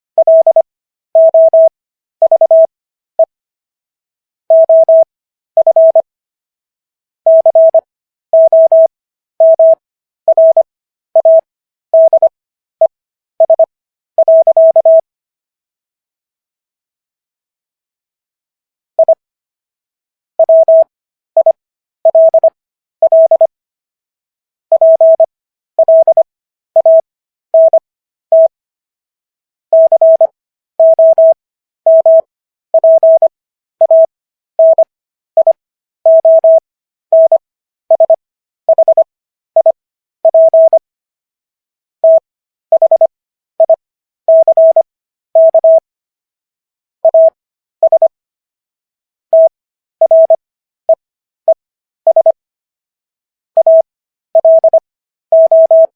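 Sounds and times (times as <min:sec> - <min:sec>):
morse code beeps: 0:00.2 - 0:03.3, 0:04.5 - 0:06.1, 0:07.3 - 0:07.8, 0:08.4 - 0:15.0, 0:19.0 - 0:19.2, 0:20.4 - 0:23.5, 0:24.7 - 0:26.2, 0:26.8 - 0:27.0, 0:27.6 - 0:28.5, 0:29.7 - 0:40.8, 0:42.0 - 0:45.8, 0:47.0 - 0:48.2, 0:49.3 - 0:52.4, 0:53.6 - 0:55.9.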